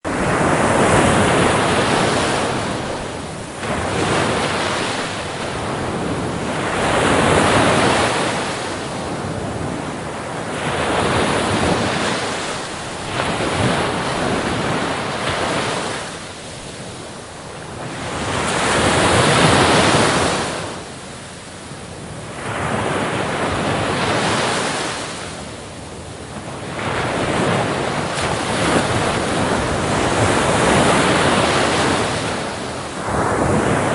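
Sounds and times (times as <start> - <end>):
sea waves rushing in: 0.0 - 33.9.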